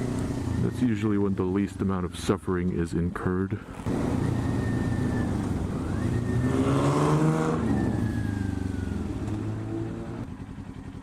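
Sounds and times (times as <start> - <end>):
motorcycle engine accelerating: 3.8 - 11.0.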